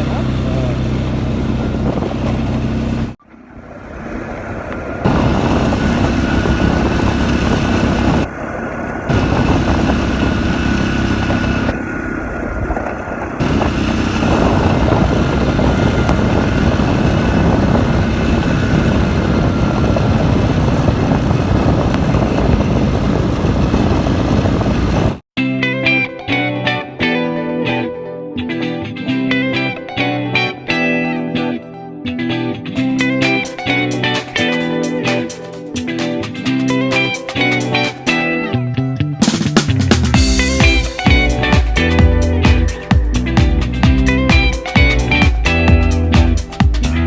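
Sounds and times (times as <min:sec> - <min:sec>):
vehicle engine running: 0:00.0 - 0:03.2, 0:04.0 - 0:25.3, 0:39.3 - 0:47.0.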